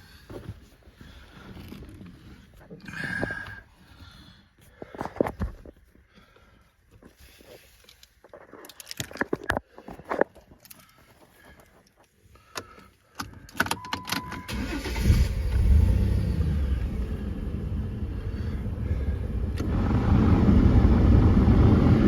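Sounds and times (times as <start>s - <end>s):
car engine starting and idling: 13.6s - 22.0s
air conditioning rushing: 14.4s - 22.0s.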